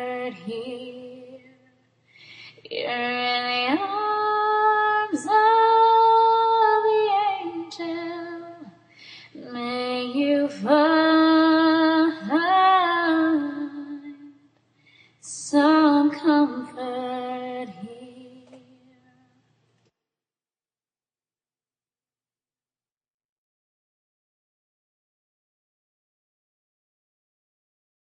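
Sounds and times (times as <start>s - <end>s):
woman singing a slow ballad: 0.0s - 14.4s, 15.2s - 19.3s.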